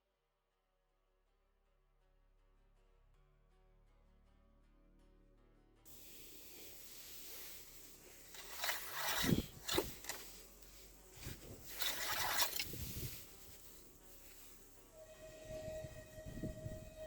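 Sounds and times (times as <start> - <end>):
rustling and scraping: 6.4 - 14.9.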